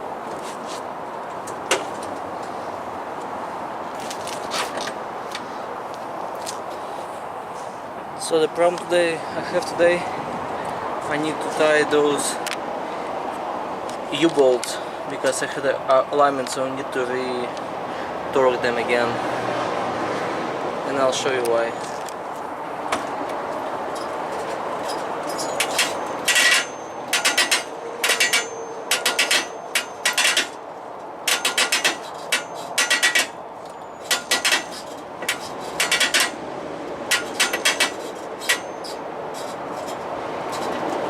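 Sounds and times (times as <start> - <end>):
squeaky creaking from truck: 21.6 - 22.3, 23.8 - 36.4, 37.0 - 41.0.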